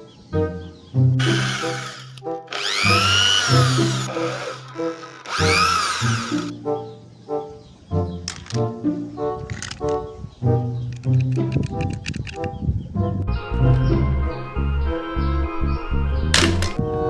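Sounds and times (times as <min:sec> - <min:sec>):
background music: 0:00.0 - 0:17.0
power drill whirring: 0:01.2 - 0:06.5.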